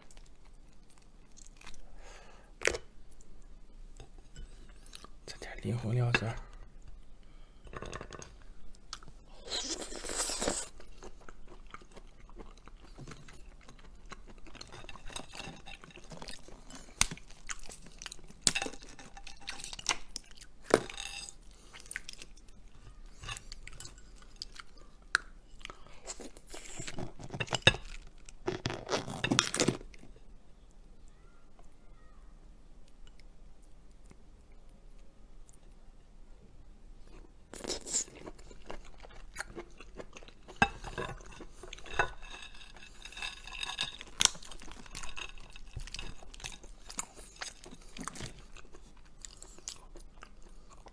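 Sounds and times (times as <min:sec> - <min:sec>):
person chewing and crunching: 0:07.7 - 0:30.2, 0:37.1 - 0:50.9.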